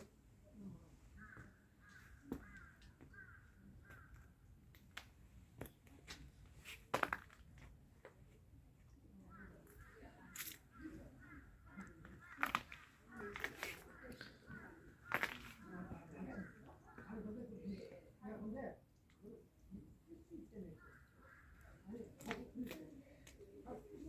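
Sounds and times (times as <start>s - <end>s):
bird calling: 0.0s - 4.3s, 9.2s - 17.3s, 20.2s - 24.0s.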